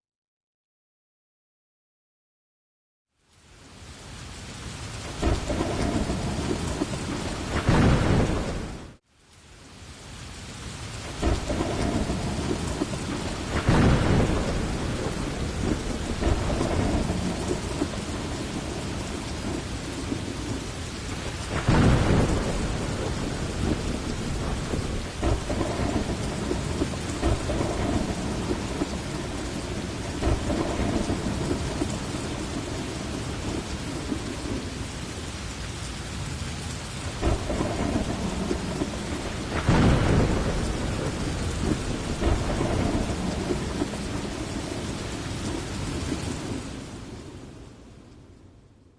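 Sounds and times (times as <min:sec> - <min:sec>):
heavy rain falling: 0:03.1 - 0:48.9
rolls of thunder: 0:05.2 - 0:08.8, 0:11.2 - 0:20.6, 0:21.3 - 0:34.8, 0:37.2 - 0:47.3.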